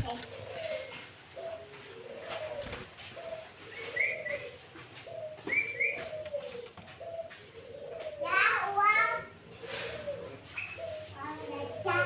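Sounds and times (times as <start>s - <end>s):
bulbul calling: 0.0s - 8.6s
dove cooing: 0.0s - 12.0s.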